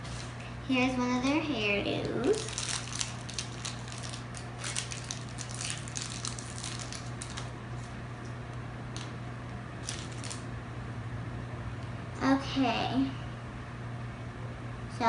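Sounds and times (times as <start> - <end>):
packaging crinkling: 0.0 - 0.5, 2.1 - 8.0, 9.8 - 10.5
steady low hum: 0.0 - 15.0.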